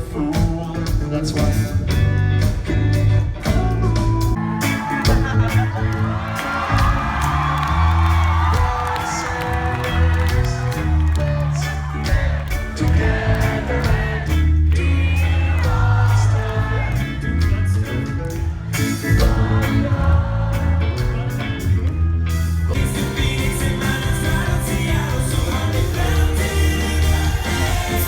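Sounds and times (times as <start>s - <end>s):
rock band playing loudly: 0.0s - 28.0s
person singing: 22.7s - 28.0s.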